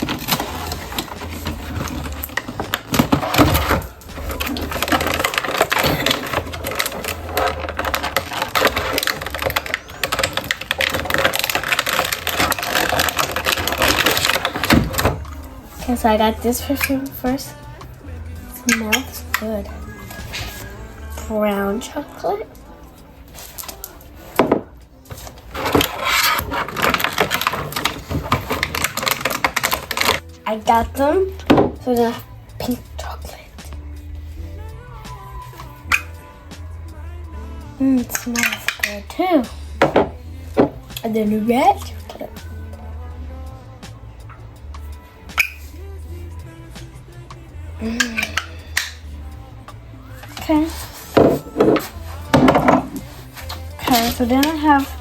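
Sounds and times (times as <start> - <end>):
packaging clicking and crinkling: 0.0 - 15.5, 25.1 - 30.2
handling crackles and rustles: 0.0 - 30.4, 47.9 - 55.0.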